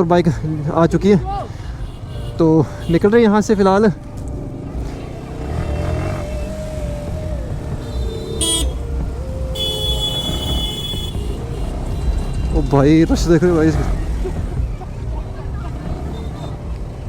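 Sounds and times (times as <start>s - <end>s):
motorcycle engine rumble: 0.0s - 17.0s
motorcycle horn: 1.8s - 3.1s, 7.8s - 8.9s, 9.5s - 12.4s.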